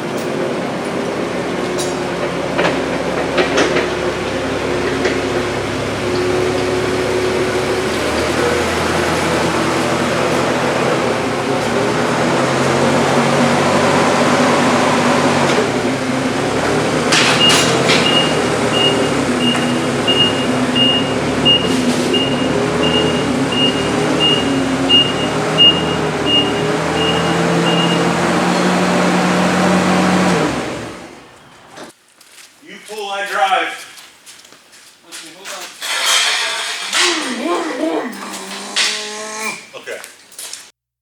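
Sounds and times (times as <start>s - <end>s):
vehicle engine running: 0.0s - 31.8s
reversing alarm beeping: 17.3s - 29.2s.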